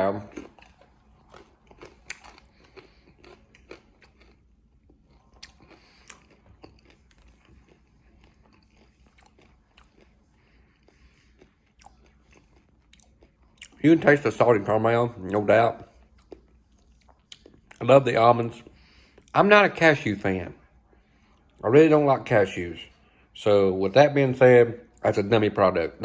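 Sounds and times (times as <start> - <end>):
person chewing crunchy nuts: 0.0 - 13.9, 15.2 - 17.9.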